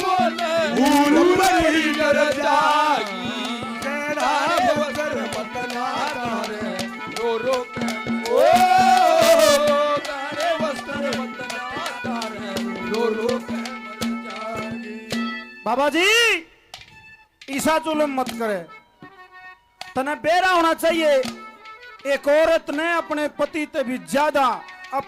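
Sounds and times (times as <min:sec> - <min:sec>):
hand drums fast beat: 0:00.0 - 0:15.5.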